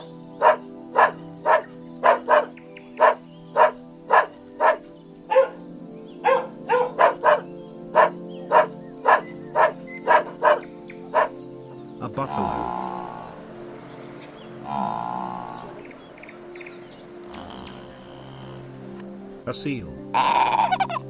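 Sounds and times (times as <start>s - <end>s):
background music: 0.0s - 21.0s
dog barking: 0.4s - 5.6s, 6.2s - 11.4s.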